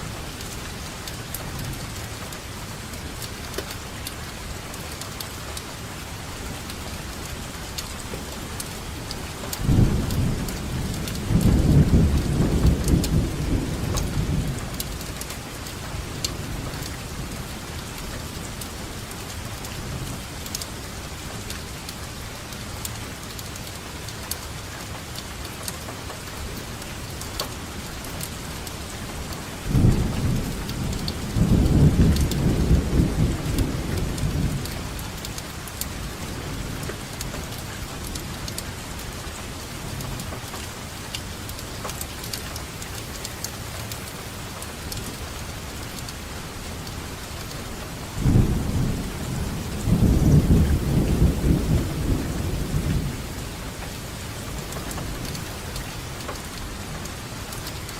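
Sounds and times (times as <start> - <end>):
steady rainfall: 0.0 - 57.9
rolling thunder: 9.6 - 14.9, 29.6 - 35.2, 48.2 - 53.6.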